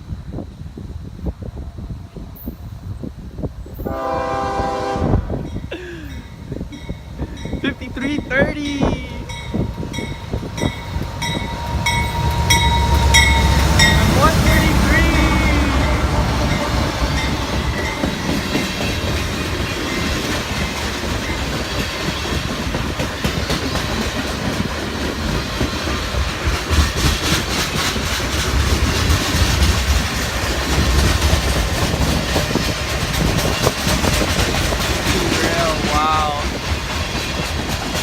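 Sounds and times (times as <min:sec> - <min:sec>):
freight train rumbling: 0:00.0 - 0:38.0
wheels clacking over rail joints: 0:09.3 - 0:38.0.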